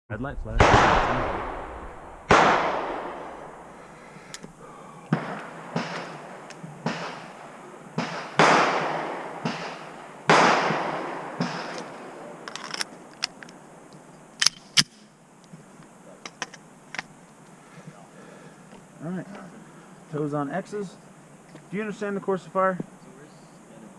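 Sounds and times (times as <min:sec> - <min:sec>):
loud pistol shots echoing: 0:00.6 - 0:03.7, 0:05.1 - 0:12.4
distant gunshots: 0:00.6 - 0:03.8, 0:05.1 - 0:12.3.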